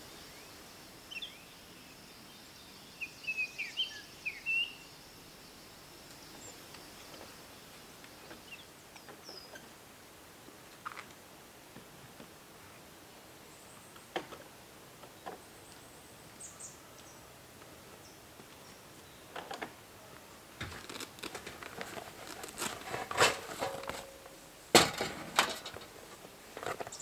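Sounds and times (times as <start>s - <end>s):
clicks rustles and knocks: 20.6s - 27.0s.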